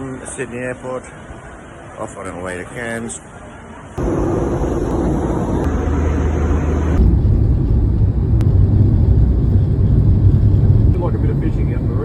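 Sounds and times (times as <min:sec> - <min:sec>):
moving vehicle rumble: 0:03.3 - 0:12.0.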